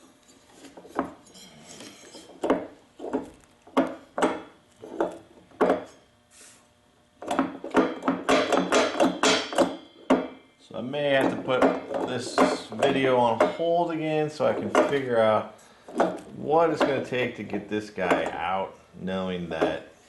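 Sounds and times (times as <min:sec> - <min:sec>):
sharp metallic knocks and clinks: 0:11.1 - 0:15.1.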